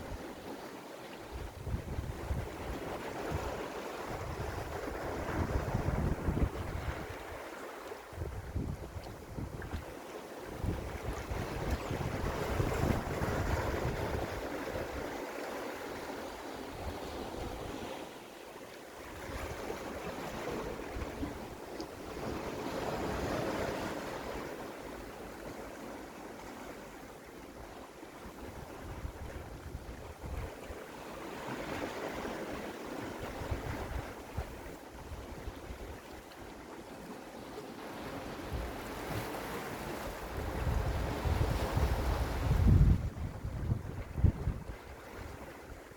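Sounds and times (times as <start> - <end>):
sea waves washing against rocks: 0.0 - 18.3, 37.7 - 45.9
wind buffeting microphone: 1.3 - 7.5, 8.1 - 9.9, 10.5 - 15.1, 28.4 - 30.7, 33.2 - 36.0, 39.9 - 45.8.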